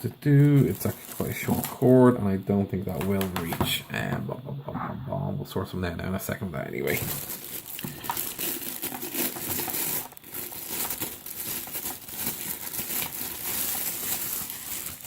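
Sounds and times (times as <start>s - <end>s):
packaging crinkling: 0.2s - 2.1s, 6.8s - 15.0s.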